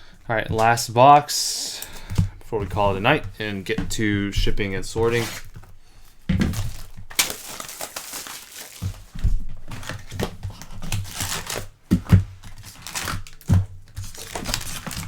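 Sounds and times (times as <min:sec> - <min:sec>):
plastic wrapping crinkling and tearing: 0:04.8 - 0:15.0
dull knocks of box: 0:06.3 - 0:07.3.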